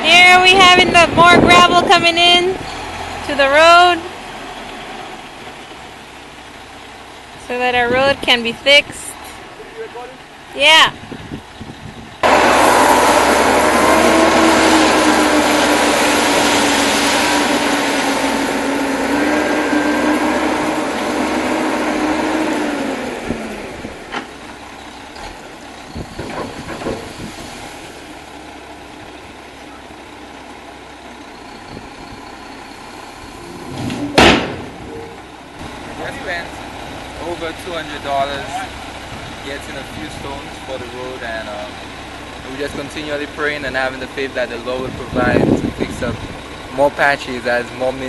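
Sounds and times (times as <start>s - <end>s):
truck engine running: 0.0s - 48.0s
loud rushing noise: 12.2s - 23.6s.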